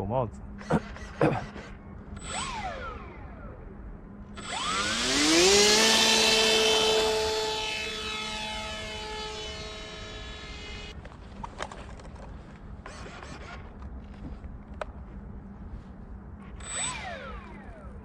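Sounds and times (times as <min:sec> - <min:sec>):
short falling whine: 0:00.7 - 0:11.0
model aeroplane motor whining: 0:00.8 - 0:03.7, 0:04.3 - 0:11.0, 0:16.6 - 0:18.0.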